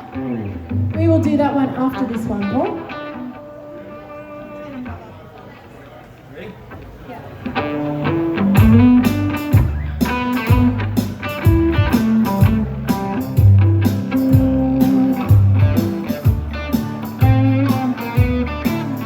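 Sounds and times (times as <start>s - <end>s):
bass guitar: 0.0s - 3.4s, 7.5s - 19.0s
electric guitar: 0.0s - 5.7s, 6.8s - 19.0s
drums playing steady beat: 8.5s - 19.0s.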